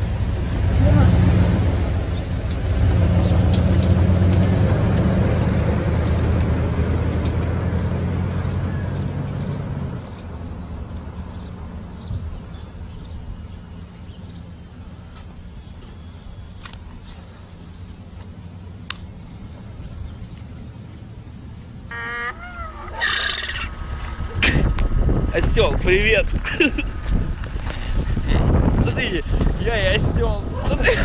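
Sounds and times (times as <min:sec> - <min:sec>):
low engine-like rumble: 0:07.2 - 0:31.0
short high chirps: 0:21.9 - 0:23.7.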